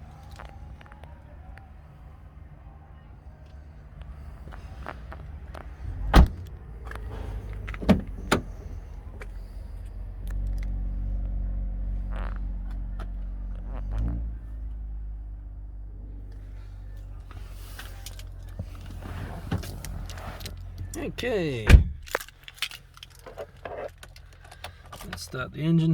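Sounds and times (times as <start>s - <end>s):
car door clunks and thumps: 5.6s - 9.3s, 18.6s - 20.9s, 21.6s - 22.3s.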